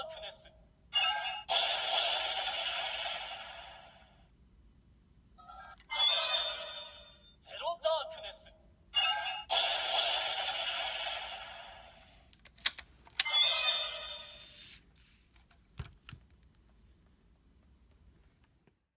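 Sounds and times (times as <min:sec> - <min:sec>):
toy electronic sound effects: 0:01.0 - 0:04.0, 0:05.4 - 0:07.6, 0:09.0 - 0:11.9, 0:13.2 - 0:14.6.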